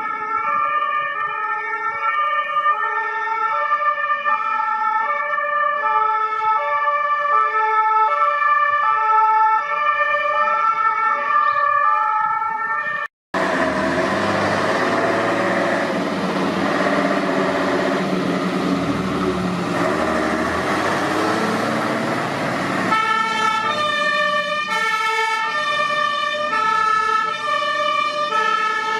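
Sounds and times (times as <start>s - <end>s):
fire engine two-tone sirens: 0.0s - 28.9s
vehicle engine and road noise: 12.0s - 28.9s.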